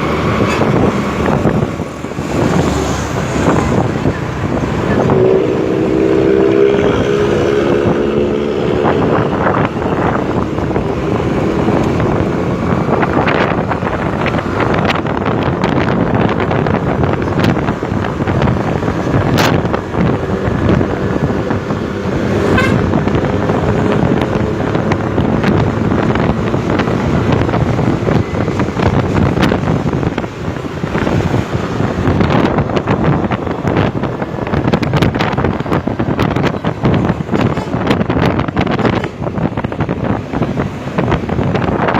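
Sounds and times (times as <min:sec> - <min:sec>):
bus engine running: 0:00.0 - 0:41.9
wind buffeting microphone: 0:00.0 - 0:41.9
horn tone: 0:04.8 - 0:07.0, 0:22.4 - 0:23.1.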